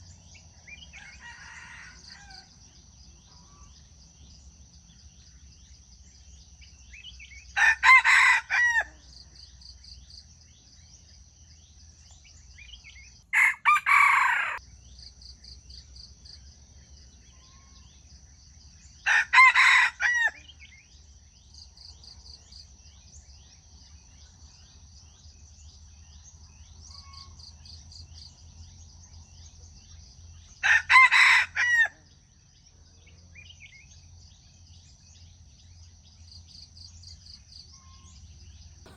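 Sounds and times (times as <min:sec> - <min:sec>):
rooster crowing: 0:00.9 - 0:02.5, 0:07.6 - 0:09.0, 0:13.3 - 0:14.6, 0:19.0 - 0:20.5, 0:30.6 - 0:32.0.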